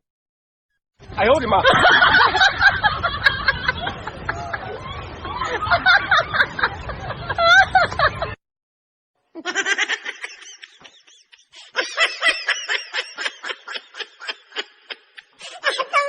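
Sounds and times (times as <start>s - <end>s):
person snickering laughter: 9.4s - 16.0s.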